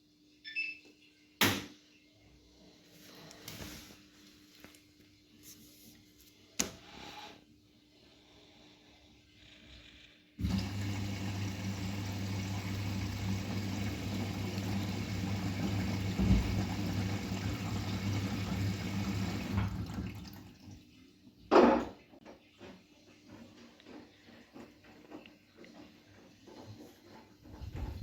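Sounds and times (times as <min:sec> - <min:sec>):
washing machine water rushing in: 0:10.4 - 0:20.9.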